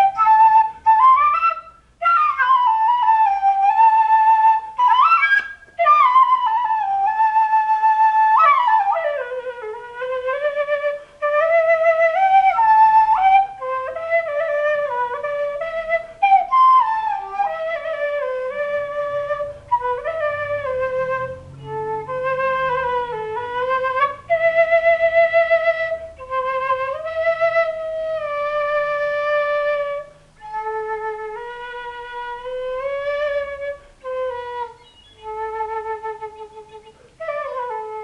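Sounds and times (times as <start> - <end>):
flute playing slow melody: 0.0 - 38.0.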